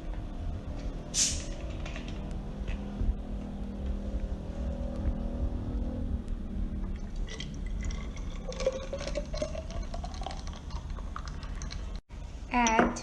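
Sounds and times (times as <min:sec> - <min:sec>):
cola pouring over ice: 0:07.0 - 0:12.0.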